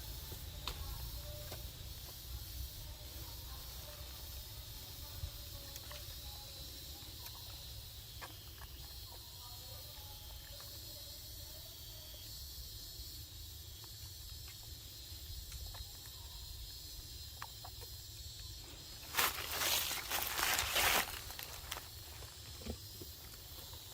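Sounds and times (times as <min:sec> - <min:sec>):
rustling and crunching: 0:18.7 - 0:23.9.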